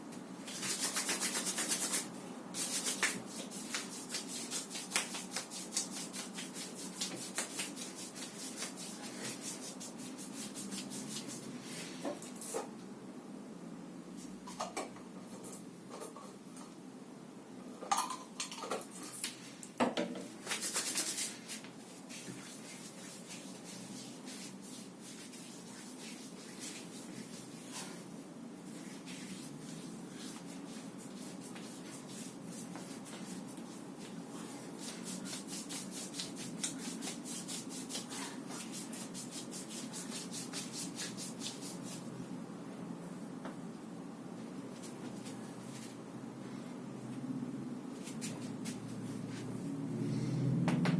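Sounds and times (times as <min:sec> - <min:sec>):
hands rubbing over skin: 0:00.5 - 0:12.0, 0:20.4 - 0:42.1, 0:48.0 - 0:49.6.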